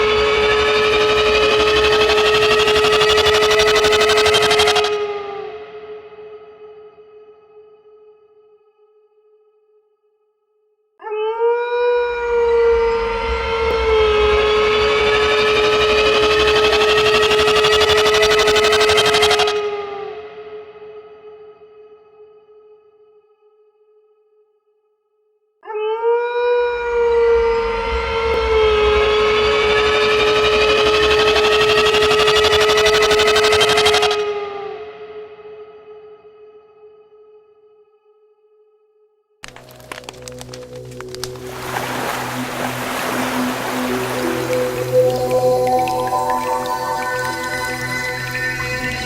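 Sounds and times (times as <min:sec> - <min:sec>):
steady alarm tone: 0:16.1 - 0:19.6.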